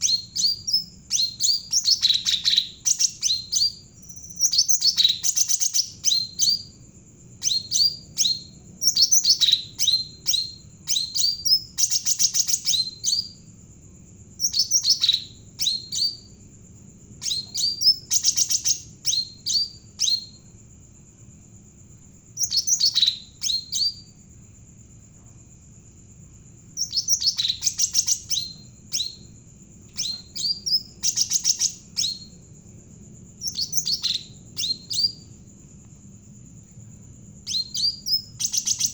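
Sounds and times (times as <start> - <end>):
bird singing chirps and trills: 0.0 - 6.8, 7.4 - 13.4, 14.4 - 16.4, 17.2 - 20.5, 22.4 - 24.1, 26.7 - 29.3, 29.9 - 32.4, 33.4 - 35.3, 37.4 - 38.9.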